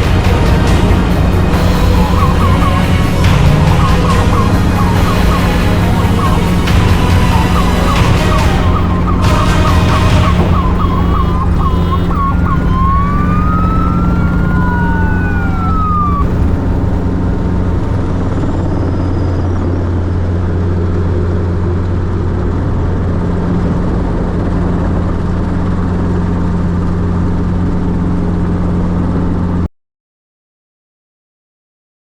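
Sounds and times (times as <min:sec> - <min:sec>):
whistle-like tones: 0:00.0 - 0:18.0
helicopter droning: 0:00.0 - 0:29.6.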